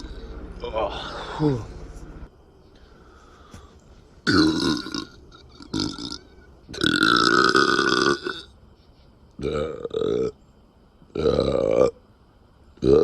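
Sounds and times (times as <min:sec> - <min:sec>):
person burping: 0:04.2 - 0:08.5, 0:09.4 - 0:10.4, 0:11.1 - 0:12.0, 0:12.8 - 0:13.0.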